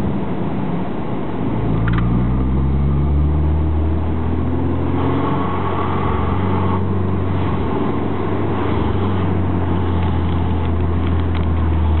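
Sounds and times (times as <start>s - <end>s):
car engine running: 7.2s - 12.0s.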